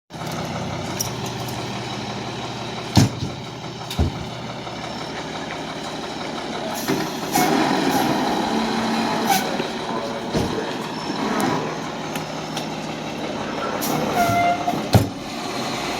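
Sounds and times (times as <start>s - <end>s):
diesel engine running: 0.1s - 15.9s
heavy thumps: 2.9s - 4.3s.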